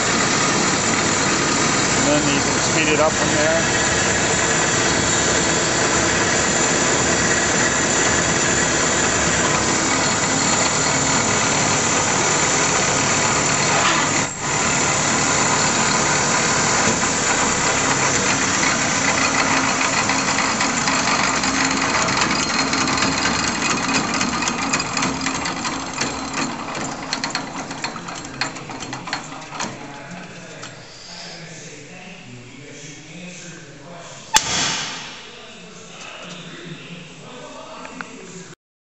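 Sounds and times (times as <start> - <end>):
wood lathe motor whining: 0.0 - 29.9.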